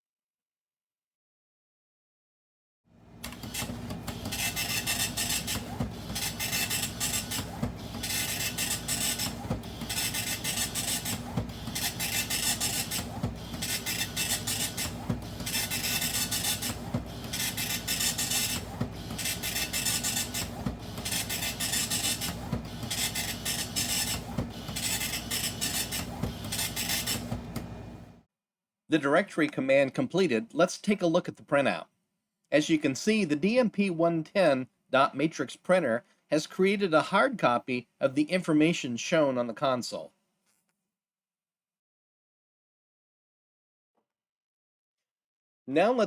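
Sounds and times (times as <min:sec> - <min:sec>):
dot-matrix printer buzzing: 0:03.2 - 0:28.2.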